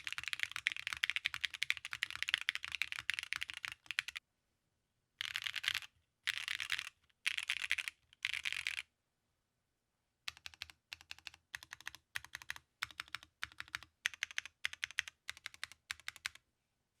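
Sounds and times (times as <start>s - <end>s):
typing on mechanical keyboard: 0.0s - 4.2s, 5.2s - 8.8s, 10.3s - 16.4s.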